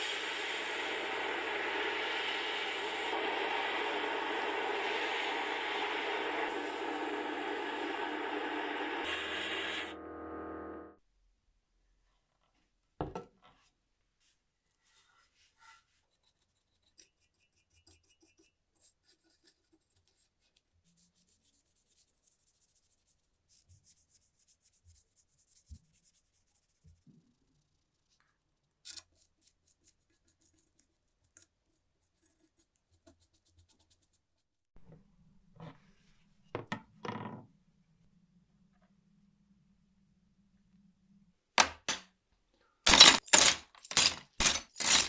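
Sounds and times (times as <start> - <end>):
scraping and rubbing on small parts: 15.6 - 34.7, 42.9 - 45.0.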